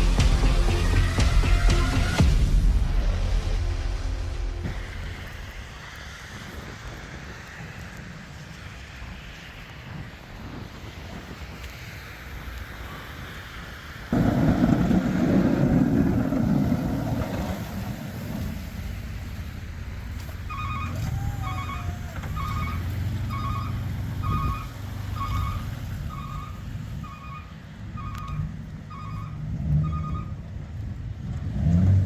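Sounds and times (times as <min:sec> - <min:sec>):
loud low rumble: 0:00.0 - 0:05.8, 0:14.1 - 0:20.1
vehicle engine hum: 0:00.0 - 0:32.0.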